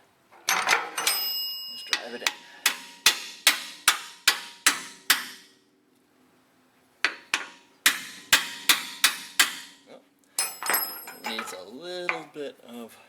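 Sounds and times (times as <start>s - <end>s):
hammer striking metal bolt: 0.5s - 5.5s, 7.1s - 9.8s, 10.4s - 12.3s.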